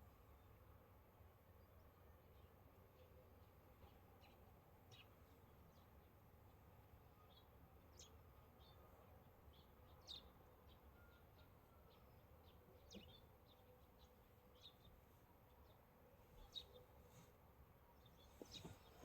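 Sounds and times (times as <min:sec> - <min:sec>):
faint bird chirps: 0:07.1 - 0:19.0.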